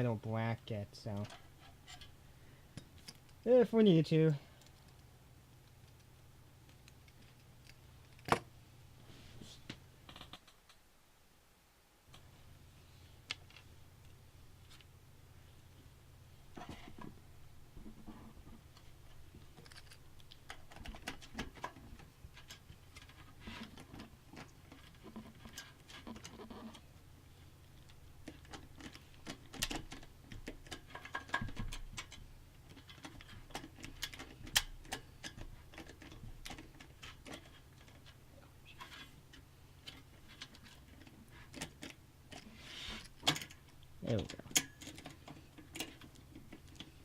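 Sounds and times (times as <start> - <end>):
metal parts and screws clicking: 2.8 - 3.5, 19.5 - 26.8, 27.6 - 47.0.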